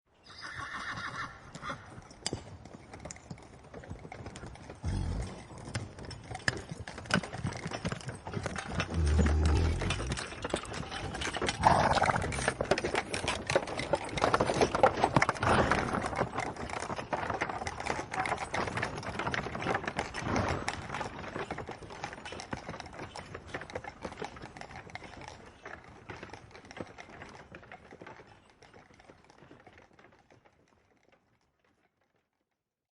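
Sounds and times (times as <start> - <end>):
horse whinnying: 0.2 - 1.9, 8.8 - 10.4, 11.5 - 12.6
hooves clip-clopping: 0.2 - 32.6
cart clattering: 2.0 - 31.2.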